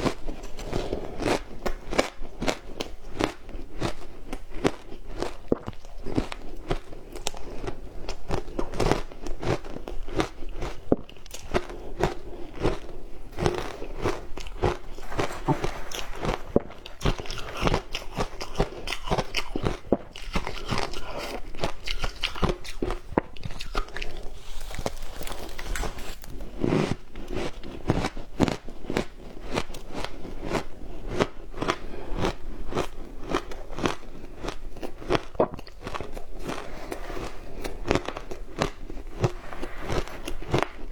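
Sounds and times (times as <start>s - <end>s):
crunching frozen ice: 11.4s - 27.0s.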